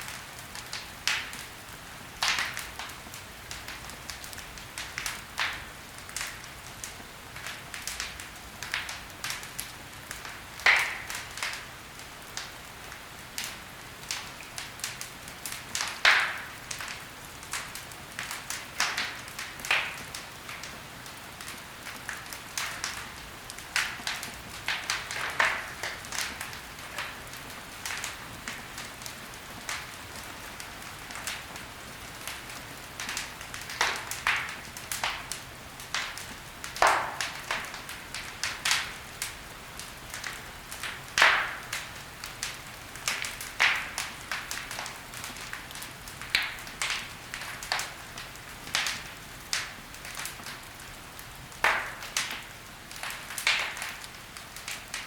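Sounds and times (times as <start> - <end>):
soft steady hiss: 0.0 - 55.0
wood fire crackling: 0.0 - 55.0.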